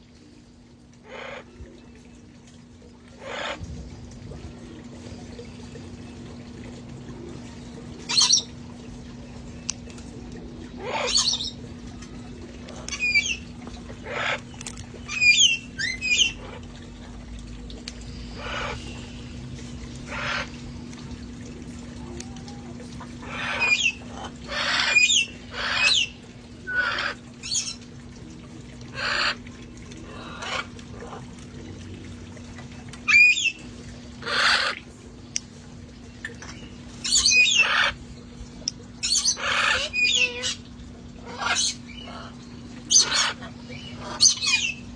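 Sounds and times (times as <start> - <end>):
steady low hum: 0.0 - 44.9
parrots squawking: 3.2 - 3.6, 10.8 - 11.5, 14.0 - 14.4, 18.4 - 18.9, 20.1 - 20.5, 23.2 - 26.1, 26.7 - 27.8, 28.9 - 29.4, 34.2 - 34.8, 37.0 - 38.0, 39.0 - 40.6, 41.2 - 44.8.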